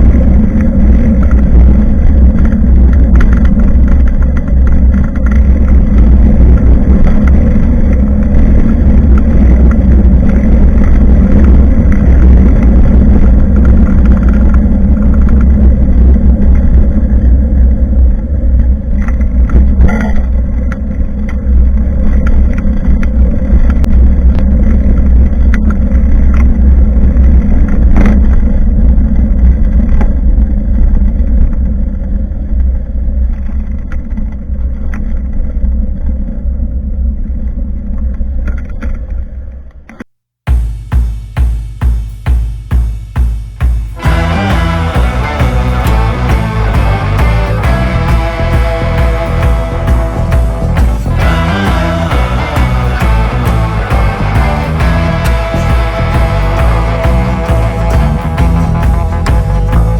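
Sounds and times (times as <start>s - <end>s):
wind on microphone: 0.0s - 33.8s.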